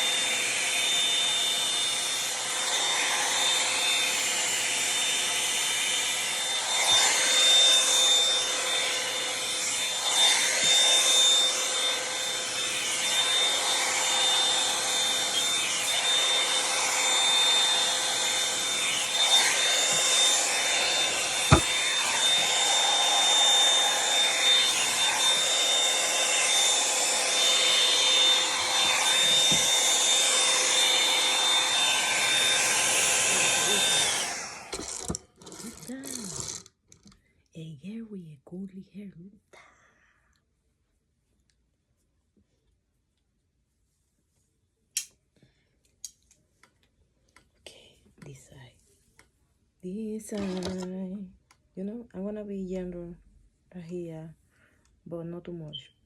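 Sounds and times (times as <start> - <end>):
hot-air brush blowing and whining: 0.0 - 36.6.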